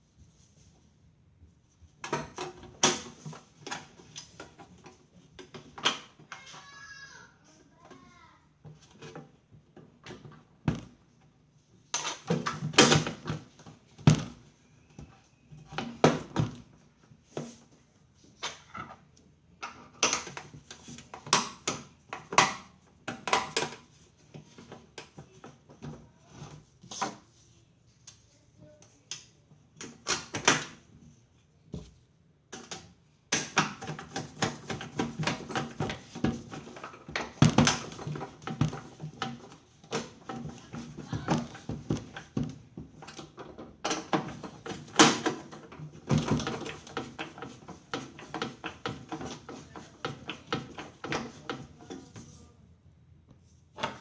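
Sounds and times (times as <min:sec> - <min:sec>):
hard parts knocking and clattering: 0:32.6 - 0:52.1.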